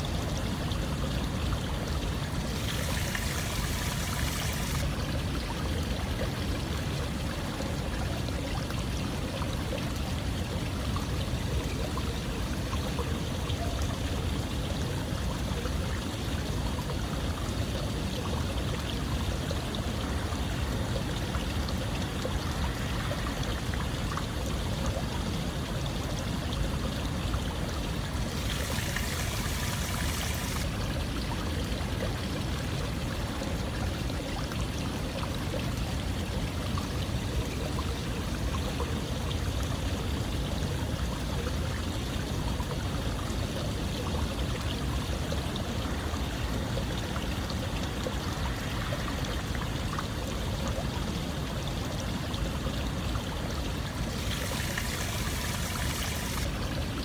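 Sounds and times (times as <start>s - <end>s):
running water flowing: 0.0s - 37.4s, 43.2s - 57.0s.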